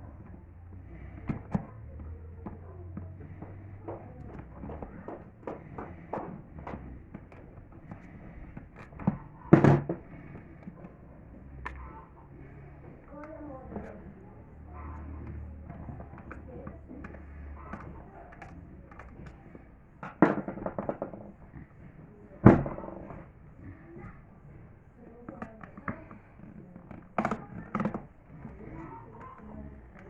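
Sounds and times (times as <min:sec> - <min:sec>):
hard objects knocking: 0:00.1 - 0:24.2.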